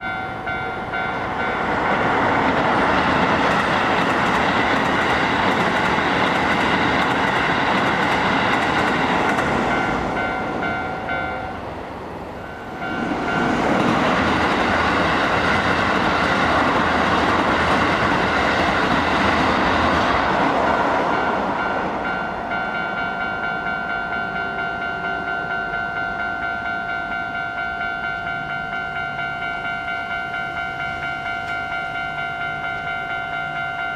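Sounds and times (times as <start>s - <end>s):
trains passing: 0.0s - 33.9s
level crossing alarm dinging: 21.2s - 33.9s.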